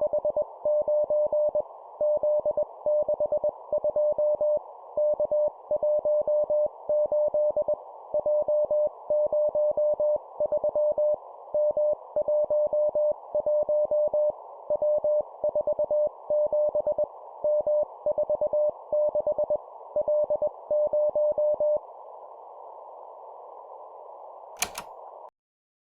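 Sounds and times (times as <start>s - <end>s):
morse code beeps: 24.6s - 24.8s
short click: 24.6s - 24.9s.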